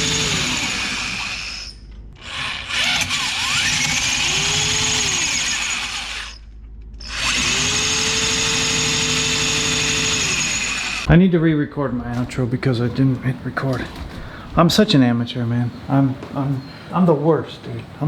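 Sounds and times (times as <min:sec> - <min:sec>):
electric drill boring into steel: 0:00.0 - 0:06.4, 0:07.0 - 0:11.1.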